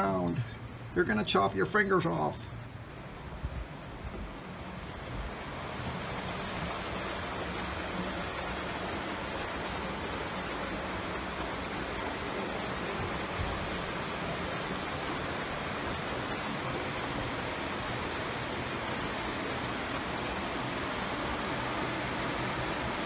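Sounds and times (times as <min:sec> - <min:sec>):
steady rushing noise: 0:00.0 - 0:23.0.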